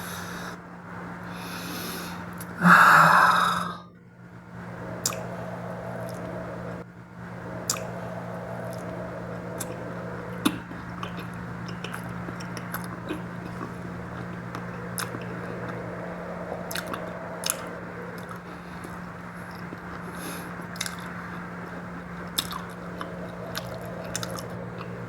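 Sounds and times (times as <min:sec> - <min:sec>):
breathy rush: 0:00.0 - 0:03.9
steady low hum: 0:00.0 - 0:25.0
chewing clicks and smacks: 0:05.0 - 0:05.3, 0:07.7 - 0:07.9, 0:09.6 - 0:15.8, 0:16.7 - 0:21.2, 0:22.3 - 0:25.0.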